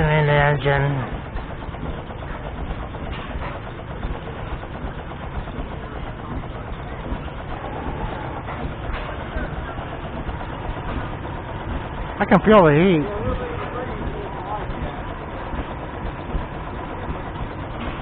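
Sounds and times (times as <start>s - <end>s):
engine running with low rumble: 0.0s - 18.0s.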